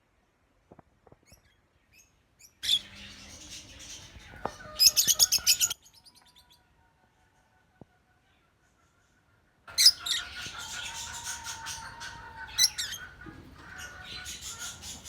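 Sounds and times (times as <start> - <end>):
lovebirds chirping: 1.1 - 6.7, 9.7 - 15.0.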